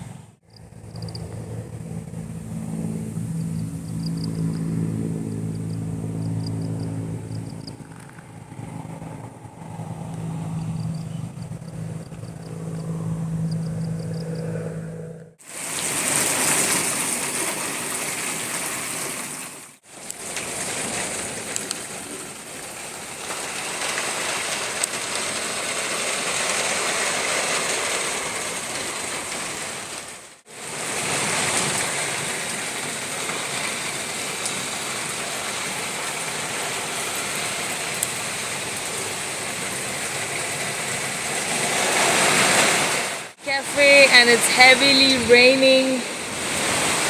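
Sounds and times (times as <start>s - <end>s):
scattered drop ticks: 0.5s - 1.3s
heavy rain pouring: 15.4s - 47.0s.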